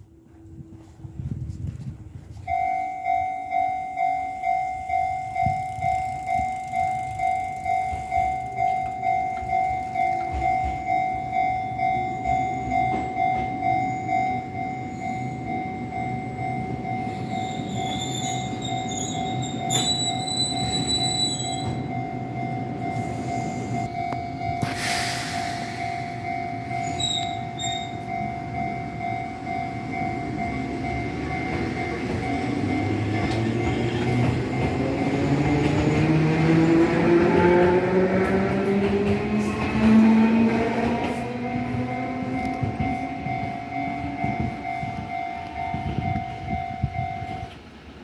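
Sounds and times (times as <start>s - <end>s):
train rumbling: 0.0s - 48.0s
level crossing bell: 2.4s - 24.6s, 25.8s - 35.5s, 41.5s - 47.6s
high squeals: 17.3s - 21.8s.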